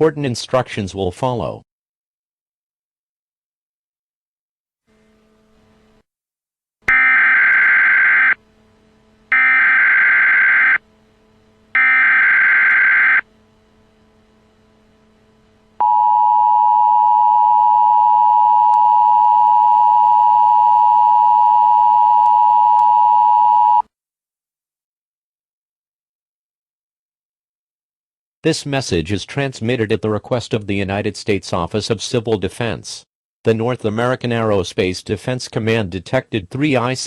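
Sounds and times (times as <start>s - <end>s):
buzzing digital warble bursts: 9.3s - 10.8s, 11.7s - 13.2s.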